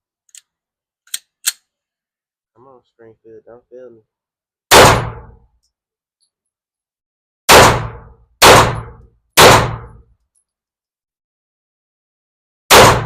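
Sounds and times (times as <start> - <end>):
pistol shots: 4.7 - 5.4, 7.5 - 10.0, 12.7 - 13.0.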